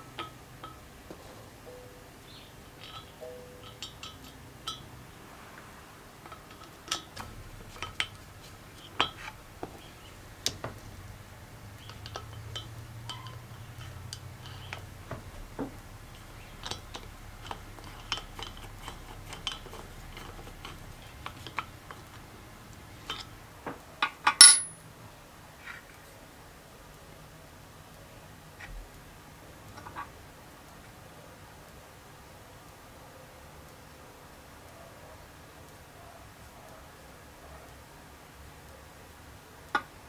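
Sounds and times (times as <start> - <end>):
metal parts and tools clinking: 24.4 - 24.8
metallic clatter with high ring: 24.4 - 24.8.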